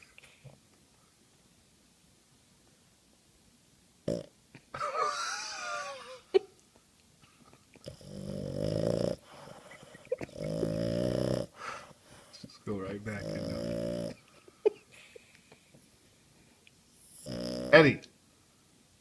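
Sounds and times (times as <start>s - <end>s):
dog snoring: 4.0s - 4.3s, 7.8s - 11.9s, 13.0s - 14.2s, 17.0s - 17.8s.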